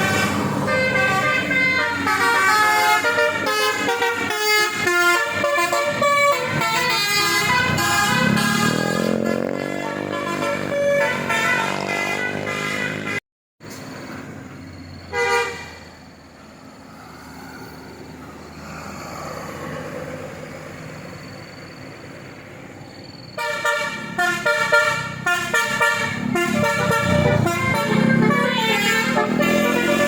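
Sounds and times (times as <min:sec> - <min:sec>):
multi-tone musical horn: 0:00.0 - 0:13.2, 0:23.4 - 0:30.0
passing traffic: 0:00.0 - 0:30.0.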